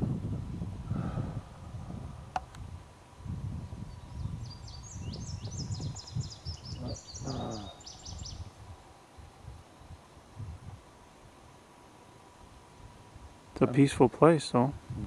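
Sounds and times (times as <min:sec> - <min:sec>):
wind rumbling on microphone: 0:00.0 - 0:11.7, 0:14.6 - 0:15.0
songbird singing: 0:00.7 - 0:14.1.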